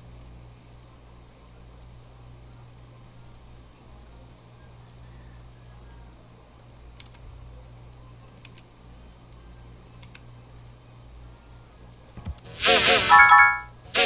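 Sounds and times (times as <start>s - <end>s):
low electrical hum: 0.0s - 14.0s
faint clicks: 0.1s - 1.0s, 1.7s - 3.5s, 4.6s - 10.8s.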